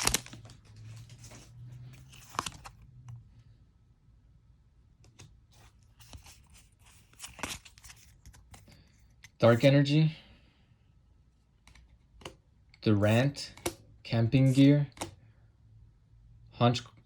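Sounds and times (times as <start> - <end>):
foil wrapper crinkling: 0.0 - 0.6
cards rustling and tapping: 0.0 - 3.2, 5.0 - 9.7, 13.5 - 13.8.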